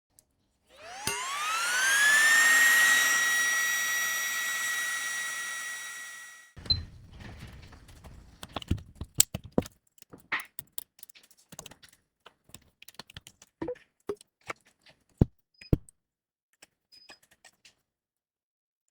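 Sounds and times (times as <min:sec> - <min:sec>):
small tools clicking and tapping: 0:08.4 - 0:14.7.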